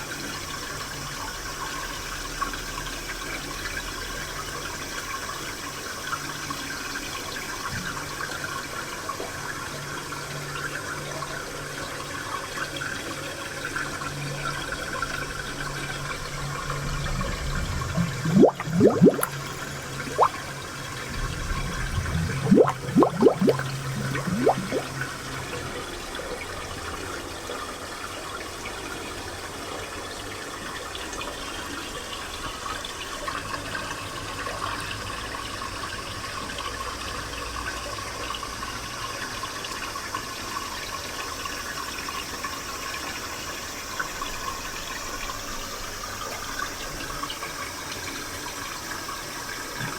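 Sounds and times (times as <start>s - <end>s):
water flowing and trickling: 0.0s - 37.5s
gurgling plops: 17.6s - 25.1s.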